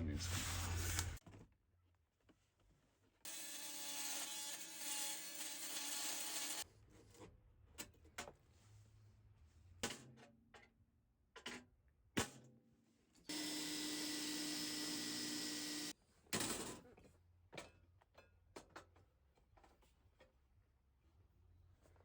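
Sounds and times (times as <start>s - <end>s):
power tool running: 13.3s - 15.9s.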